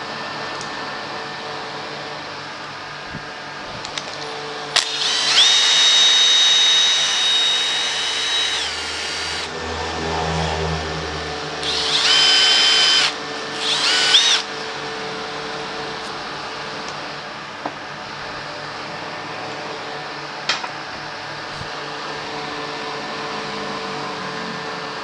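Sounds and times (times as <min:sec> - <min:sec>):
power drill whining: 0:03.0 - 0:17.0.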